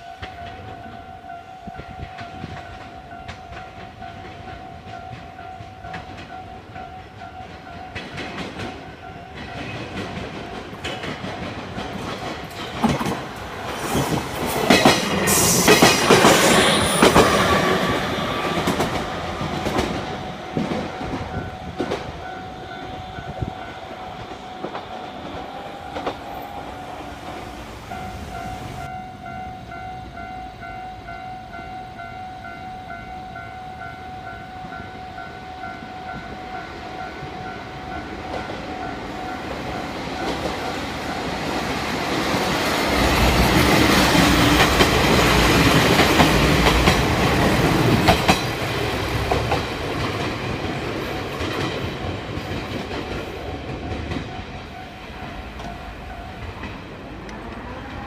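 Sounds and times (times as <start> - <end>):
train rumble and wheel clatter: 0.0 - 58.0
wheels clacking on rail joint: 0.1 - 29.0, 38.0 - 58.0
level crossing alarm bells ringing: 27.9 - 41.3.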